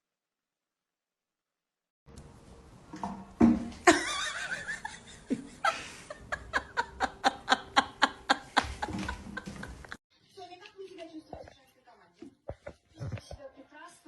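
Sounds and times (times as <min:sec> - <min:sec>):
person laughing: 0:03.9 - 0:10.0.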